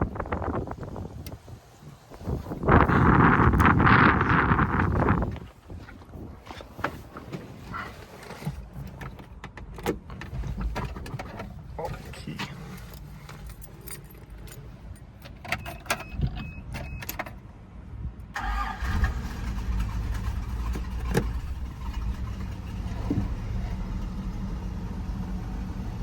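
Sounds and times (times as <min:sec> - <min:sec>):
car engine idling: 0:18.4 - 0:26.0.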